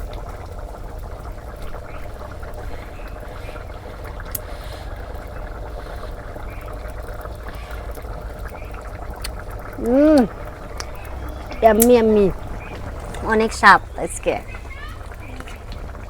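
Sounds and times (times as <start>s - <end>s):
pot bubbling: 0.0s - 16.0s.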